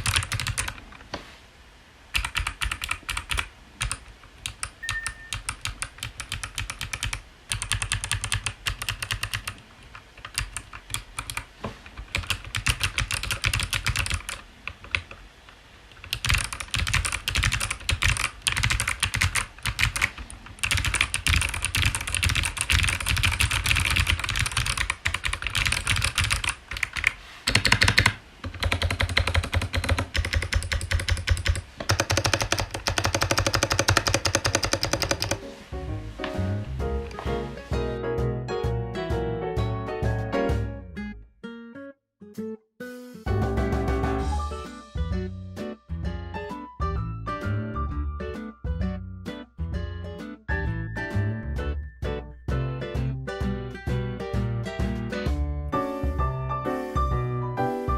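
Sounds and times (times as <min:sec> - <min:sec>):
clicky keyboard typing: 0:00.0 - 0:00.8, 0:02.2 - 0:11.5, 0:12.1 - 0:15.2, 0:16.0 - 0:35.4.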